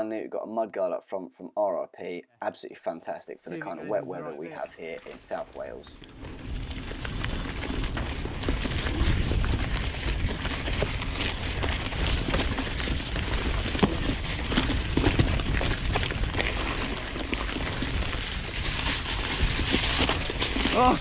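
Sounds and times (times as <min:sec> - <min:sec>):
wind noise on microphone: 0:05.8 - 0:21.0
bike rattling and knocking: 0:06.0 - 0:21.0
tyres on dirt: 0:06.1 - 0:21.0.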